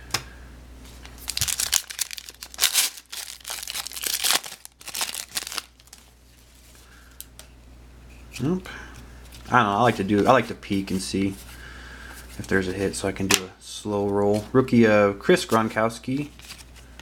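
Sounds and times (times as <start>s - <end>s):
foil wrapper tearing and crinkling: 1.2s - 6.1s.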